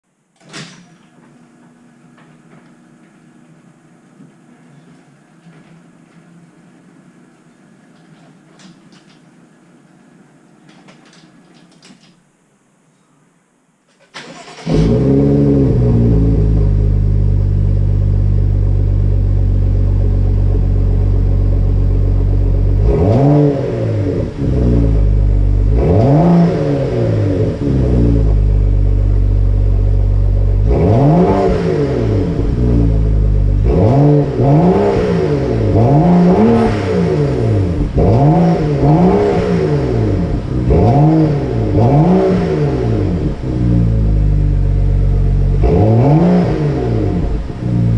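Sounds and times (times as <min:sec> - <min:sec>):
car engine idling: 0:14.2 - 0:23.1, 0:23.9 - 0:31.0, 0:37.2 - 0:47.9
car engine revving: 0:14.2 - 0:47.9.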